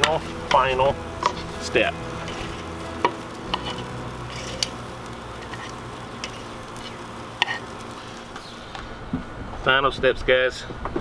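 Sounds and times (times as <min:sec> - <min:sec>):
food sizzling on grill: 0:00.0 - 0:09.8.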